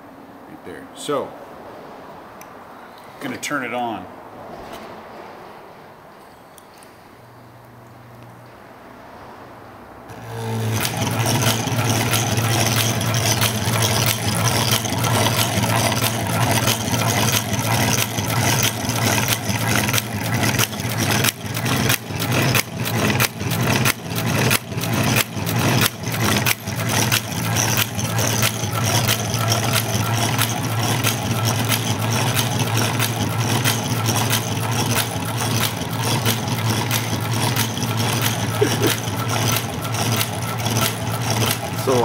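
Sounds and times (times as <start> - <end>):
electric fan motor humming: 10.1 - 42.0.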